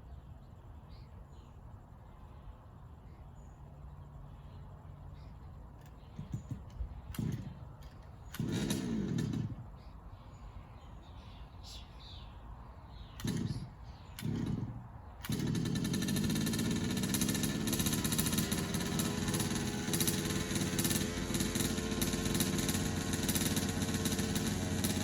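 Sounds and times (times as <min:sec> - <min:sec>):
small two-stroke engine starting: 0:06.2 - 0:09.7, 0:13.2 - 0:25.0.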